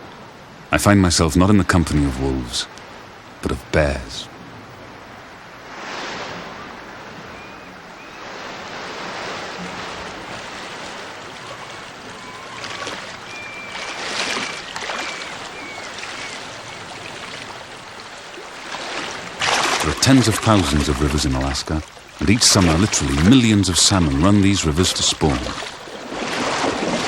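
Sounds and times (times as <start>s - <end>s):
river water rushing: 0.0s - 27.0s
short high chirping calls: 11.5s - 16.5s.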